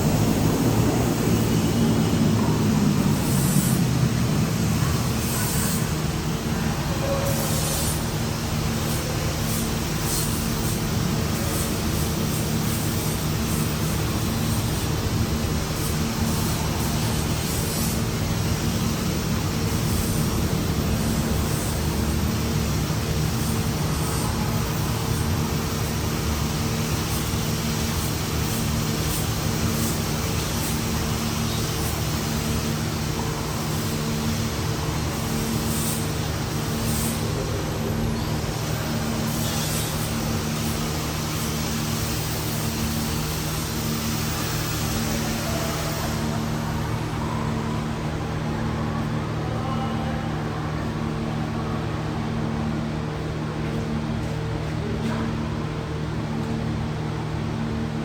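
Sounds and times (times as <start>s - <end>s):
road noise: 0.0s - 58.0s
vehicle engine drone: 0.0s - 58.0s.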